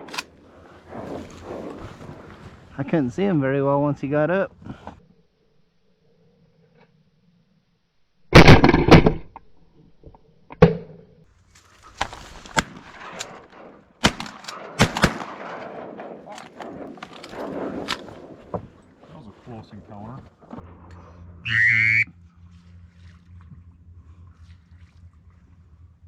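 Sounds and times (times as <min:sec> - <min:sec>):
rustling: 0:00.0 - 0:03.1, 0:11.3 - 0:15.5, 0:16.3 - 0:20.6
shotgun blasts: 0:11.9 - 0:18.6.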